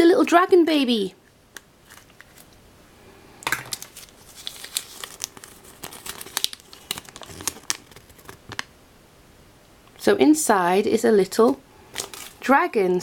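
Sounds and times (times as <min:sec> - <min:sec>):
wrapper crinkling and rustling: 0:01.8 - 0:02.6, 0:03.4 - 0:08.7, 0:11.4 - 0:12.5.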